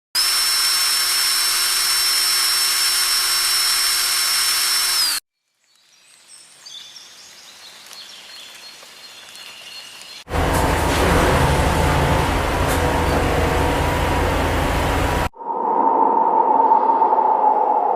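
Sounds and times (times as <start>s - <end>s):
power tool high whine: 0.2s - 5.2s.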